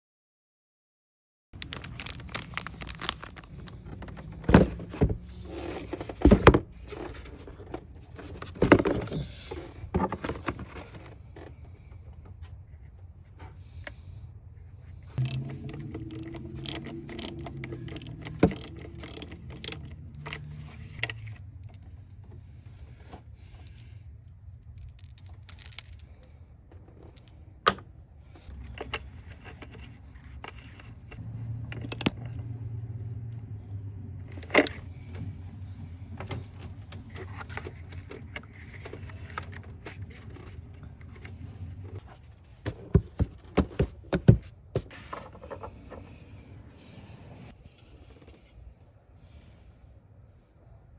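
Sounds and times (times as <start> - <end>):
low hum: 13.5 - 25.8
metal tools clinking: 15.2 - 21.3.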